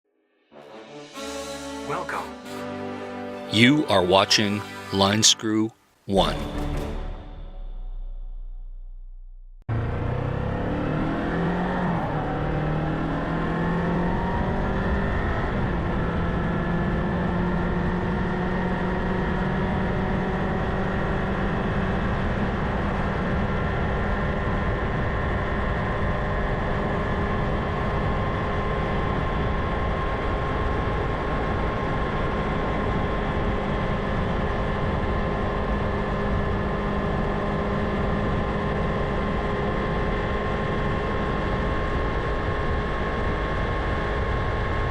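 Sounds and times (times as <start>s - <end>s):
motorcycle engine accelerating: 8.5s - 22.5s.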